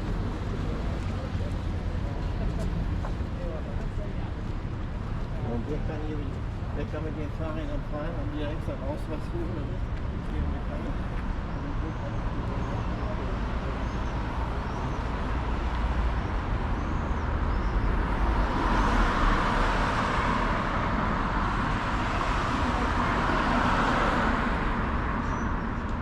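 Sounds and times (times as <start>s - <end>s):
road traffic rumble: 0.0s - 26.0s.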